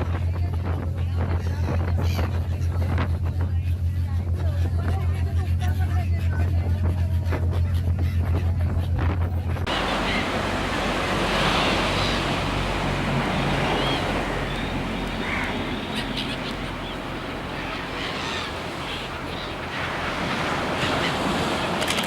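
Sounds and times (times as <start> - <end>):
wind: 0.0 - 22.0
rushing water: 9.6 - 22.0
faint bird calls: 9.7 - 21.8.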